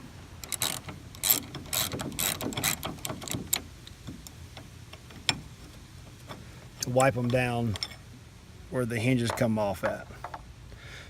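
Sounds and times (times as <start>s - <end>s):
hand ratchet clicking: 0.4s - 3.7s.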